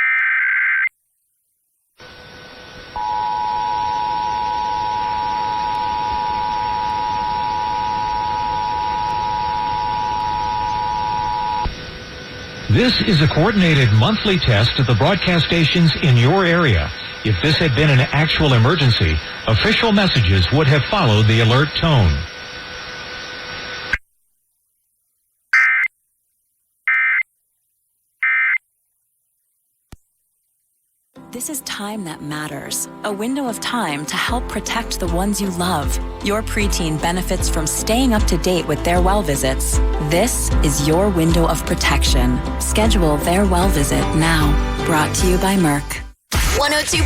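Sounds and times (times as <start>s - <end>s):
faint radio hiss: 12.4s - 23.3s.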